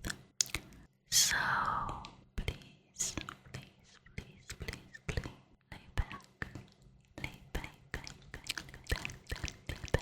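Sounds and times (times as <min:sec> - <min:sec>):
wet mouth clicks and lip smacks: 0:00.0 - 0:00.8, 0:06.4 - 0:10.0.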